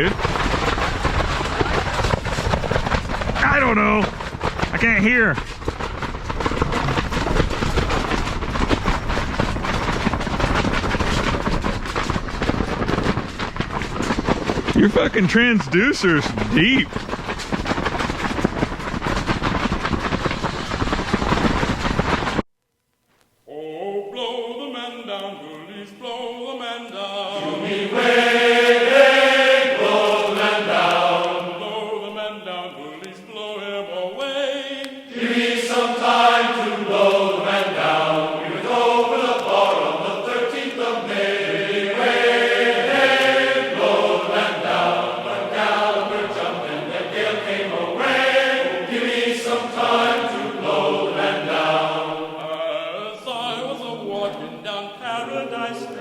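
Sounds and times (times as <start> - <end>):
choir-like chanted voices: 0.0 - 0.8, 23.5 - 56.0.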